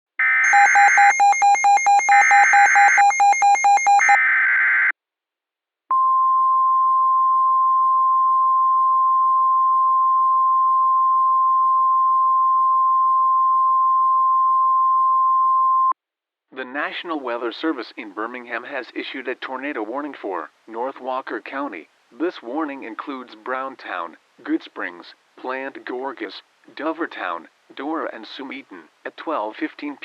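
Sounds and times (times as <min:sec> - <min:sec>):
steady warning alarm tone: 0:00.2 - 0:04.2
digital data burst with beeping: 0:00.4 - 0:04.2.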